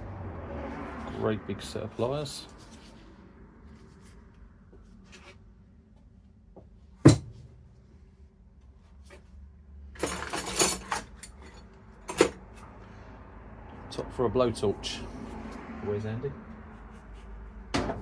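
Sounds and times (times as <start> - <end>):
metal tools clanking: 10.0 - 12.4
metal tools clattering and clinking: 10.0 - 12.4.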